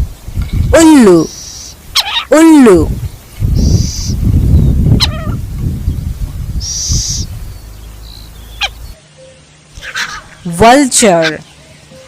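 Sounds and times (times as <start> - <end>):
owl calling: 1.1 - 2.4, 3.5 - 5.4, 6.6 - 9.0, 9.7 - 10.5.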